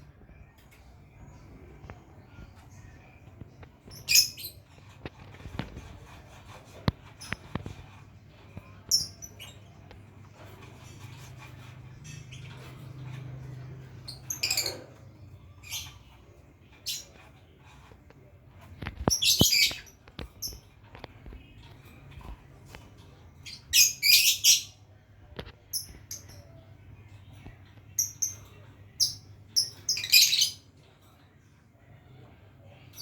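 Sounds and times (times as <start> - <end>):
bird chirping: 1.2 - 5.8, 23.3 - 30.7.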